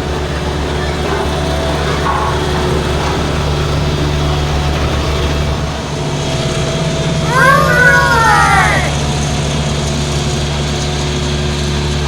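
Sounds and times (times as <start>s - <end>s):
diesel engine rumbling: 0.0s - 12.0s.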